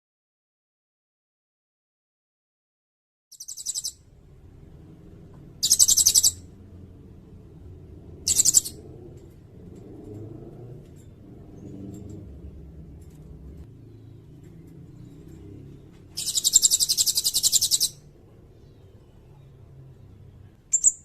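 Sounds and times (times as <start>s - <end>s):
bird trills: 3.3s - 4.1s, 5.6s - 6.5s, 8.2s - 8.8s, 13.9s - 19.5s, 20.7s - 21.0s
faint low rumble: 3.8s - 21.0s.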